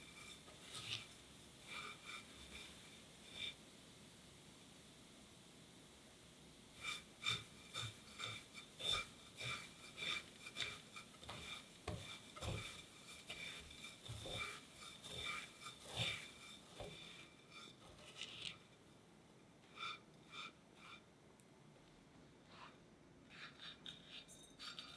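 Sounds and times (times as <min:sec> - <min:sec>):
utensil scraping pastry strands: 0:00.0 - 0:03.6, 0:06.7 - 0:18.7, 0:19.6 - 0:21.1.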